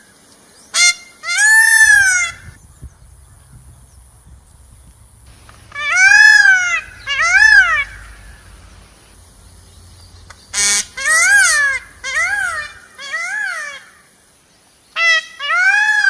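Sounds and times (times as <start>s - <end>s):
peafowl wailing calls: 1.6s - 12.8s
harsh rasping peafowl note: 1.8s - 12.8s.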